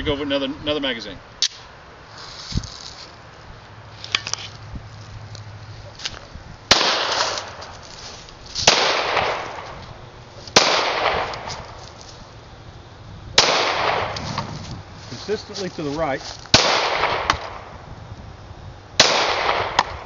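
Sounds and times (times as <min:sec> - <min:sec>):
pistol shots echoing: 0:06.7 - 0:07.6, 0:08.7 - 0:09.7, 0:10.6 - 0:11.5, 0:13.4 - 0:14.2, 0:16.5 - 0:17.7, 0:19.0 - 0:20.0.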